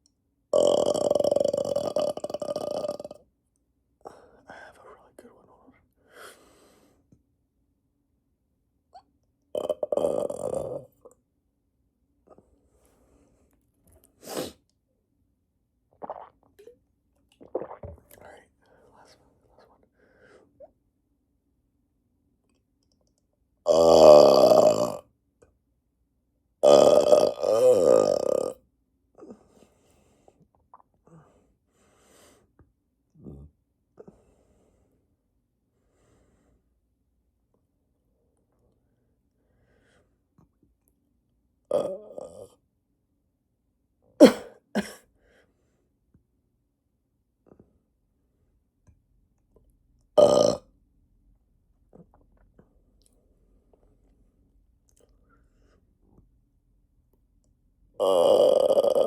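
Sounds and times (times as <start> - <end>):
long loud belch: 0.6 - 3.2, 9.6 - 10.9, 23.7 - 25.0, 26.6 - 28.6, 41.7 - 42.4, 50.2 - 50.6, 58.0 - 59.0
loud burp: 0.6 - 3.2, 9.6 - 10.9, 23.7 - 25.0, 26.6 - 28.6, 41.7 - 42.5, 50.2 - 50.7, 58.0 - 59.0.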